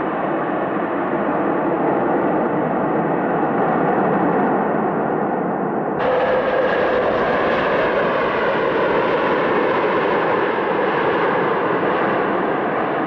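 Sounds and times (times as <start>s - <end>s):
jet engines roaring: 6.0s - 13.0s.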